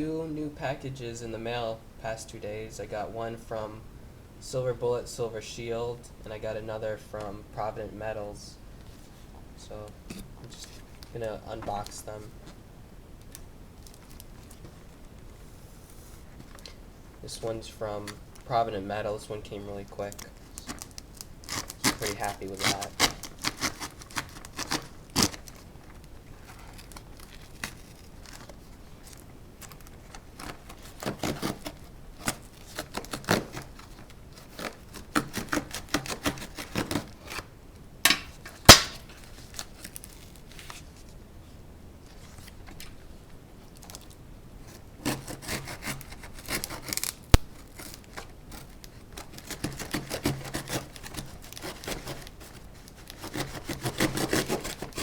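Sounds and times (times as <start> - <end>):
tape and packing material tearing: 20.0 - 37.5, 38.2 - 40.9, 45.0 - 55.0
sharp knock: 38.7 - 39.0.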